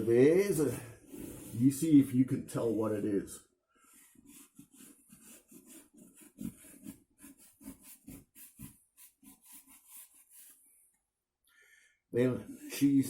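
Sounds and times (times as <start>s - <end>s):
drawing tip scratching on cardboard: 3.9s - 10.7s.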